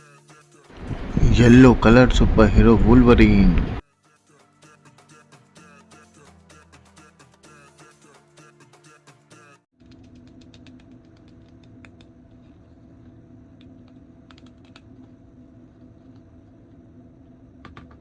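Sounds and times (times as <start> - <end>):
steady low hum: 0.8 - 3.8, 9.8 - 18.0
background music: 3.8 - 9.7.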